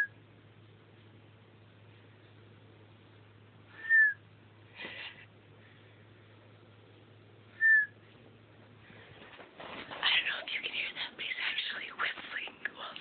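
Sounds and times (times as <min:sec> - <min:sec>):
man's whistling snore: 0:03.8 - 0:04.2, 0:07.6 - 0:07.9.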